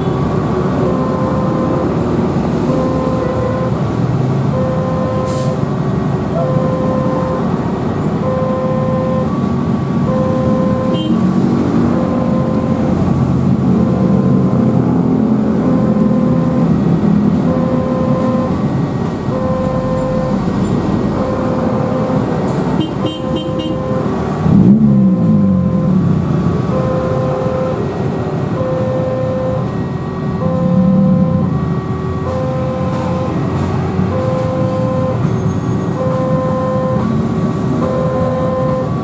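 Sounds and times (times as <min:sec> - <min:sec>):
level-crossing two-tone alarm: 0:00.0 - 0:02.0, 0:02.6 - 0:03.8, 0:04.4 - 0:05.6, 0:06.3 - 0:11.3, 0:11.9 - 0:14.8, 0:15.5 - 0:24.3, 0:24.9 - 0:26.1, 0:26.7 - 0:39.0
road traffic engine rumble: 0:00.0 - 0:39.0
vehicle with bending pitch: 0:00.0 - 0:39.0.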